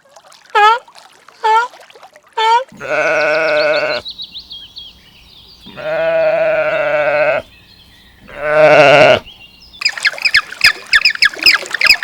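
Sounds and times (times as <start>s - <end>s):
farm animal bleating: 2.4s - 4.0s, 5.6s - 7.5s, 8.2s - 9.3s.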